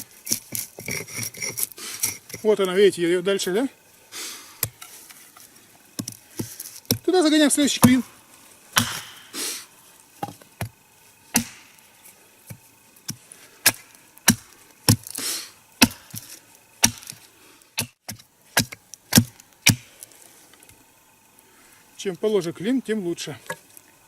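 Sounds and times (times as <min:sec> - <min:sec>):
hammering wedge into log: 0:07.8 - 0:08.0, 0:08.8 - 0:09.3, 0:11.3 - 0:11.7, 0:13.6 - 0:15.2, 0:15.8 - 0:16.2, 0:16.8 - 0:17.2, 0:17.8 - 0:19.9.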